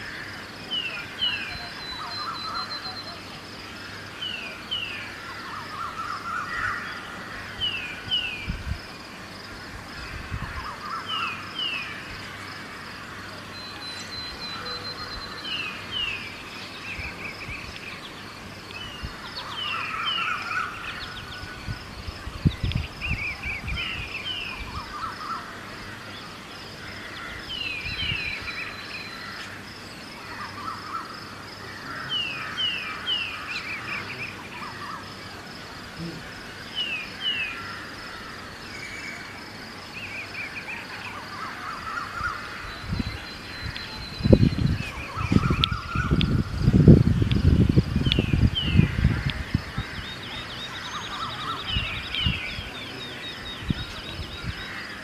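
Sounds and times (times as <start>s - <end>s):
crows calling: 0.0s - 2.9s, 3.8s - 8.1s, 19.1s - 21.8s, 24.4s - 35.0s, 36.2s - 39.4s, 41.1s - 43.8s, 44.4s - 46.5s, 48.3s - 55.0s.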